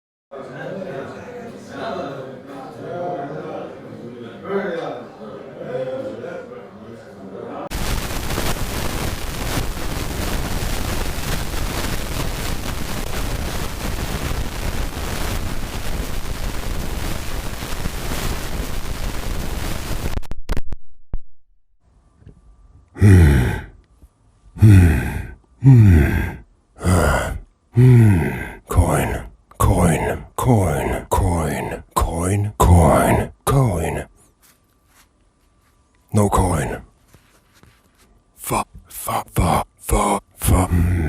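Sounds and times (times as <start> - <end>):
loud harsh static noise: 7.7 - 20.4, 23.0 - 23.8, 24.6 - 34.6, 36.0 - 41.0
person groaning: 23.0 - 23.8, 24.6 - 34.1, 36.1 - 36.8, 38.4 - 41.0.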